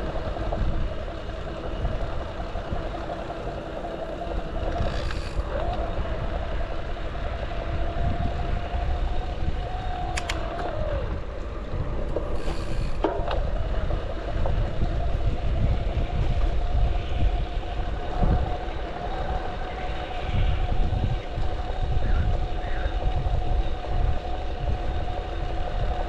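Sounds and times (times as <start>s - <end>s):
electric bike motor whine: 0.0s - 26.0s
road rumble: 0.0s - 26.0s
wind: 0.0s - 26.0s
sharp rattling clicks: 4.6s - 5.8s, 10.0s - 10.6s.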